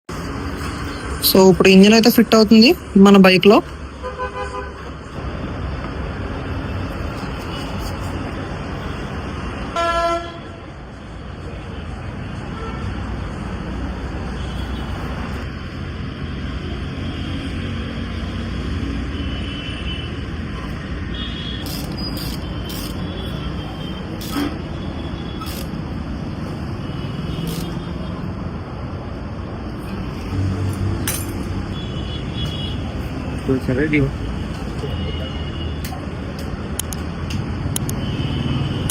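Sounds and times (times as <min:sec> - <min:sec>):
road traffic noise: 0:00.0 - 0:38.9
vehicle horn: 0:04.0 - 0:04.9, 0:09.8 - 0:10.6, 0:31.8 - 0:32.9
sharp clicks: 0:35.8 - 0:38.0.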